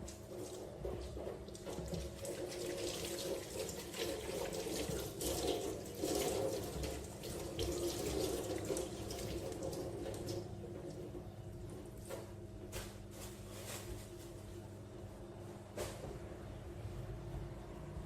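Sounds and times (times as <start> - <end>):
water pouring and splashing: 0.0 - 11.0.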